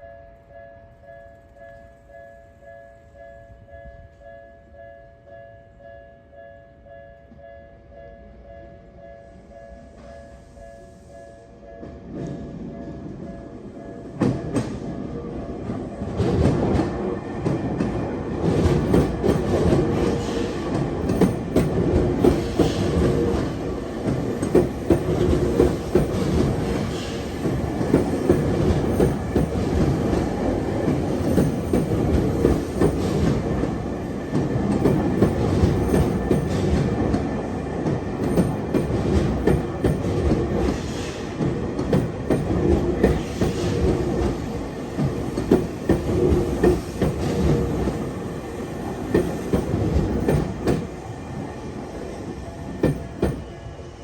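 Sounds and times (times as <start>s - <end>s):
electric train passing: 0.0s - 54.0s
wheels clacking over rail joints: 15.6s - 48.0s.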